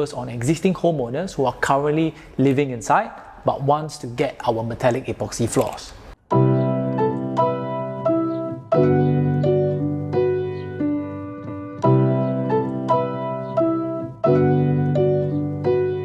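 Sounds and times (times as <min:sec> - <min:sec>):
soft piano music: 0:06.3 - 0:16.0.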